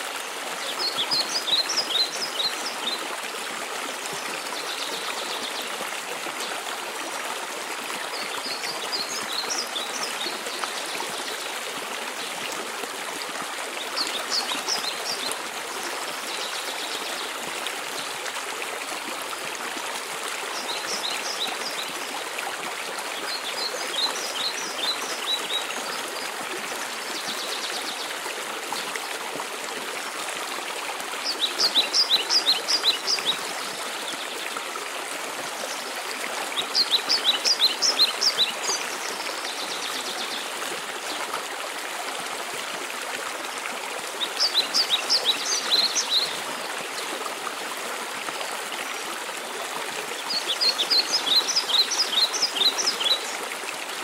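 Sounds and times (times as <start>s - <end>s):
waterfall rushing: 30.0s - 34.6s, 35.2s - 41.5s.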